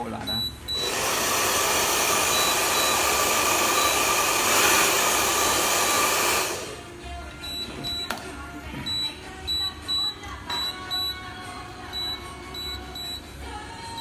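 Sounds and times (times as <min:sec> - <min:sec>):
air rushing from blower nozzle: 0:00.8 - 0:06.8.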